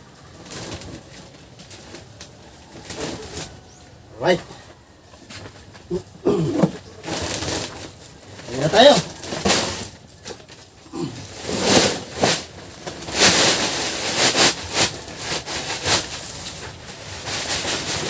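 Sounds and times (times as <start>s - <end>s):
sawdust poured from a sack: 11.0s - 18.0s.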